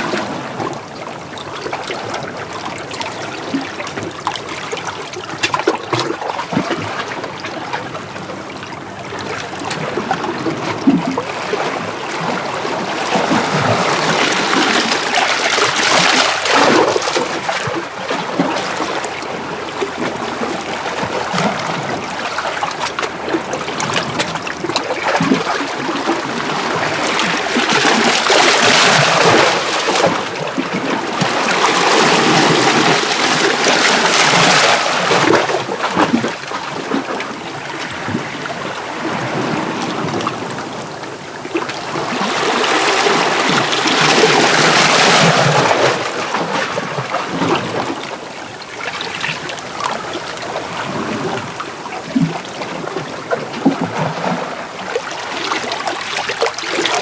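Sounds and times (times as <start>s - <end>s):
waves washing over rocks: 9.2s - 57.0s.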